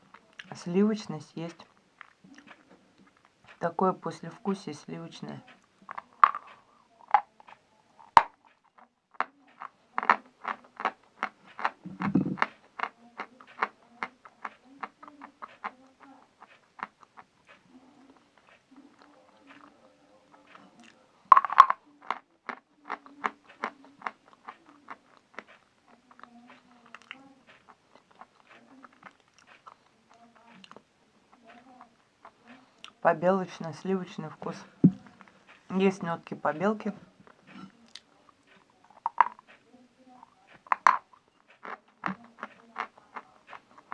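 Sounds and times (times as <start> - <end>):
chalk being chewed: 5.4 - 33.0, 37.2 - 43.9.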